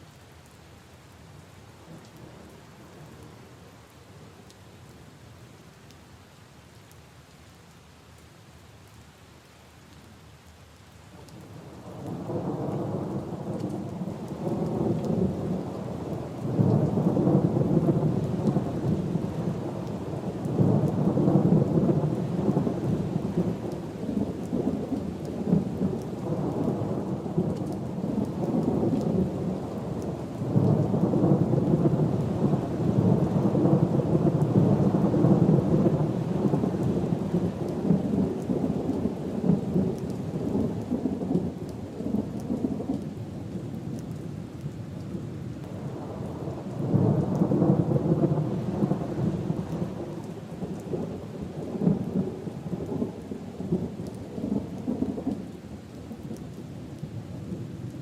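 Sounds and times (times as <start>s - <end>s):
steady rain on puddles and leaves: 0.0s - 58.0s
rolling thunder: 12.0s - 43.0s, 45.7s - 55.5s.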